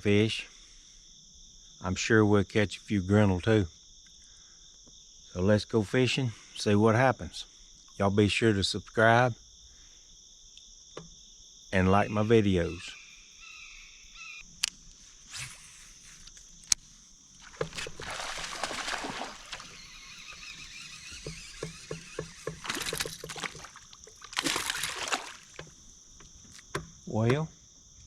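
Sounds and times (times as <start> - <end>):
high-pitched insect chorus: 0.0 - 28.0
water splashing against boat: 17.3 - 26.6.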